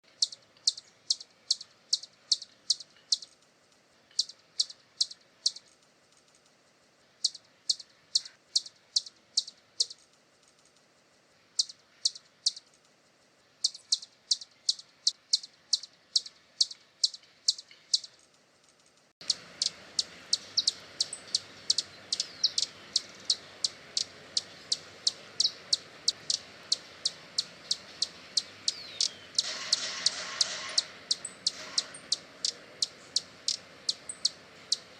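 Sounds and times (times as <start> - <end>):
steady hiss: 0.1 - 34.9
hummingbird chip notes: 4.1 - 5.7, 13.6 - 18.2, 19.2 - 29.9, 30.7 - 34.9.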